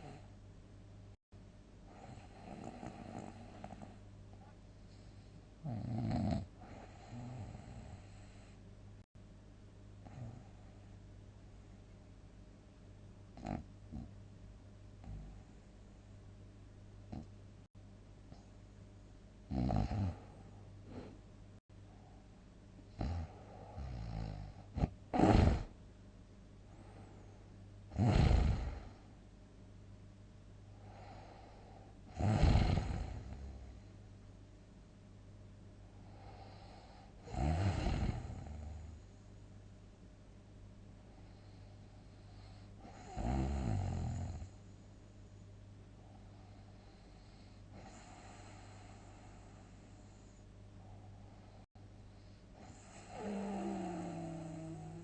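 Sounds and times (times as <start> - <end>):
faint low hum and hiss: 0.0 - 55.0
person snoring: 1.9 - 4.0, 5.0 - 8.6, 10.0 - 10.8, 19.5 - 21.2, 23.0 - 25.7, 27.9 - 29.1, 30.8 - 33.8, 36.0 - 39.0, 42.4 - 44.6, 52.6 - 55.0.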